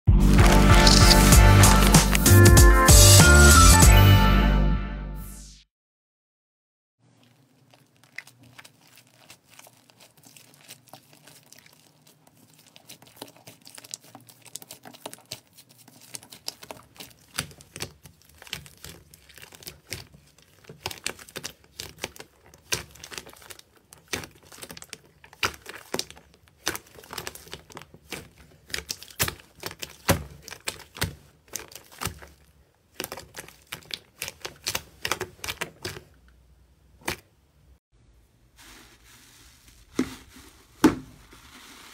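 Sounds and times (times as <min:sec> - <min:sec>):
slime crackling and popping: 0:00.3 - 0:02.4, 0:07.3 - 0:36.3.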